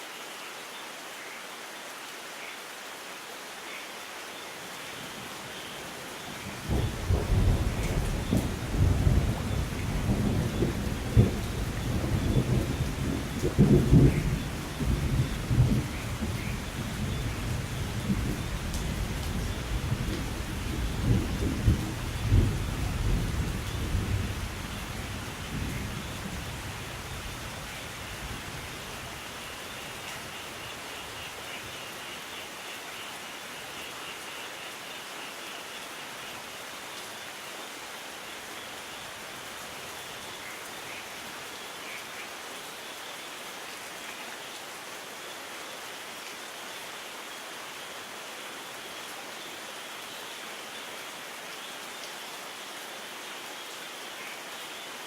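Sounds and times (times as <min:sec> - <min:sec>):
steady rain: 0:00.0 - 0:55.0
low rumble of thunder: 0:06.6 - 0:29.2.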